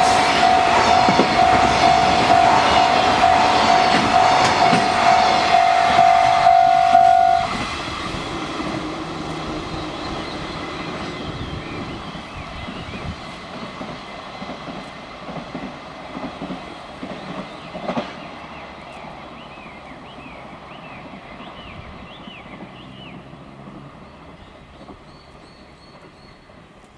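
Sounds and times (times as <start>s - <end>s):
level-crossing alarm ringing: 0.0s - 14.4s
birds chirping: 0.0s - 26.6s
freight train clattering past: 0.0s - 26.9s.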